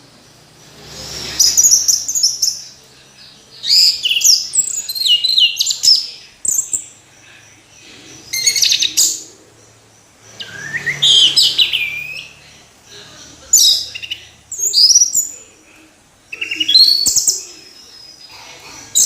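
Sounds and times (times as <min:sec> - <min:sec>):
thrush singing: 0:00.0 - 0:19.0.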